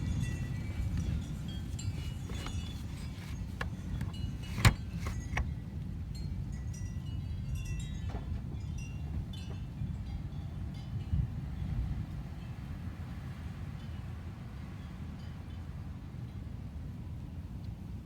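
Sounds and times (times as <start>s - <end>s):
wind gusting: 0.0s - 5.3s.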